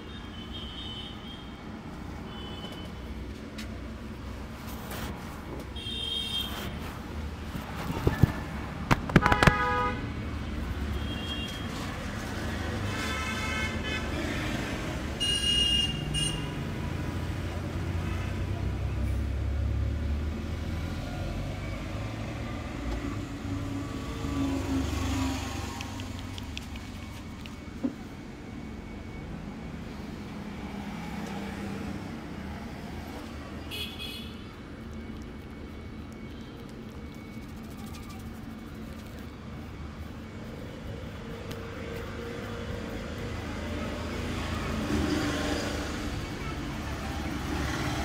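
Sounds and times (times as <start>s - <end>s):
street traffic: 0.0s - 48.0s
vehicle horns honking: 5.8s - 6.8s, 9.2s - 10.1s, 12.9s - 14.5s, 15.2s - 16.6s, 33.6s - 34.5s.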